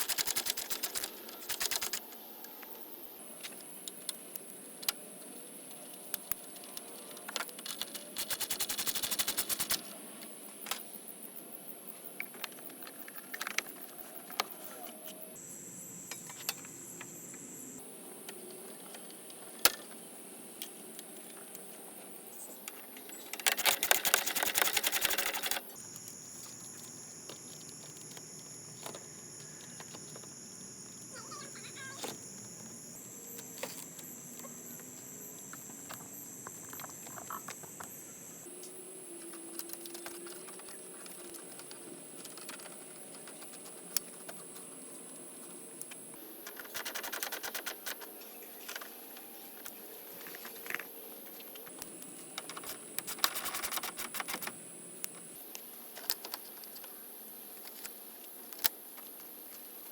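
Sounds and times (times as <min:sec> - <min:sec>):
rapid clicking: 0:00.0 - 0:02.0, 0:07.7 - 0:09.8, 0:23.4 - 0:25.7, 0:52.5 - 0:54.6
faint high whine: 0:00.0 - 0:46.8, 0:47.5 - 0:58.3
hand tools clicking and tapping: 0:23.0 - 0:25.7.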